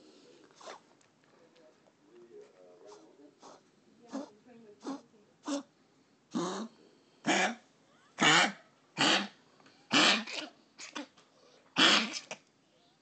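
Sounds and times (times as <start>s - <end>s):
dog hacking coughs: 7.3s - 7.6s, 8.2s - 11.1s, 11.8s - 12.4s.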